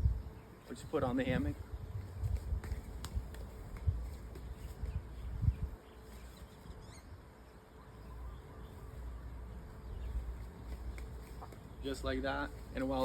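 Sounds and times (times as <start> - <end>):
faint bird chirp: 4.4 - 12.2.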